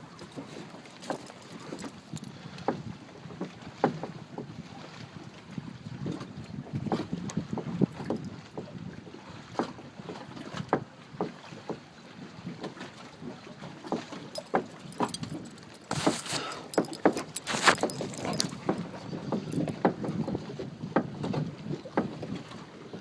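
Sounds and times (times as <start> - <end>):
loose objects knocking: 14.3 - 20.2.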